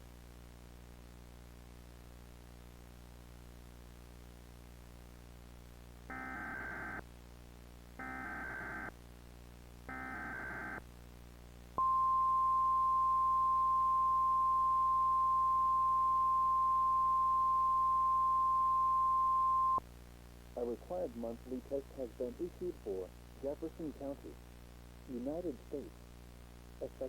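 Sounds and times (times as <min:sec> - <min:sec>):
steady attention tone: 0:11.8 - 0:19.8.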